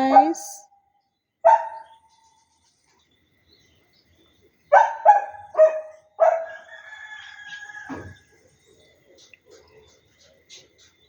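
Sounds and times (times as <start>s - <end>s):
dog barking: 0.0s - 0.5s, 1.4s - 2.1s, 4.7s - 6.7s.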